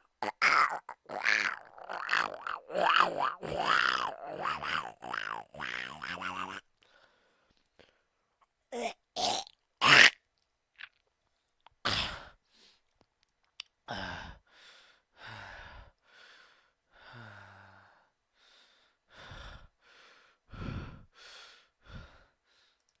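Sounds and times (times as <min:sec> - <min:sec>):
breathy exhales and groaning sighs: 0:13.9 - 0:14.5, 0:20.5 - 0:21.1.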